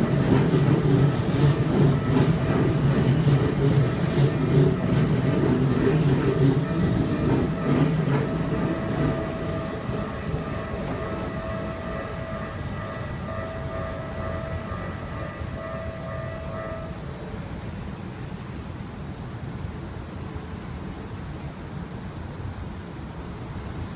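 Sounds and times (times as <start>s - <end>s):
train wheels rumbling and clacking: 0.0s - 16.9s
crossing signal ringing tone: 0.0s - 17.2s.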